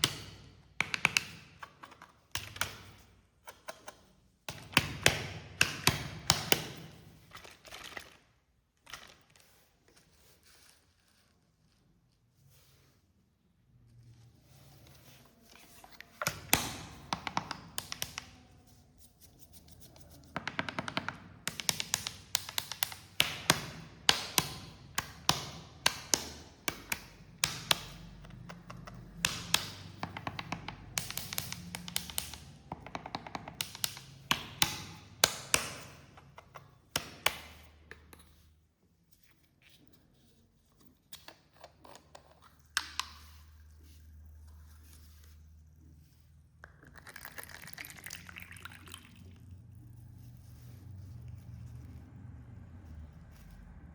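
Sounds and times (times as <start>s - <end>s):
sharp taps on hard object: 20.3s - 36.0s.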